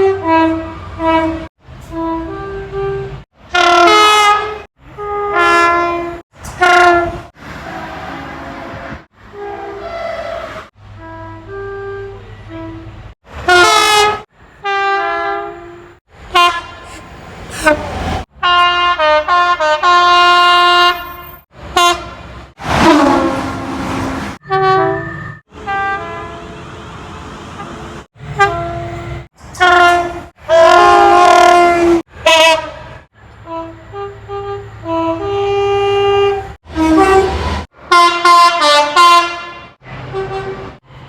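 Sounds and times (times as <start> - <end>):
two-tone train horn blasts: 0.0 - 40.8.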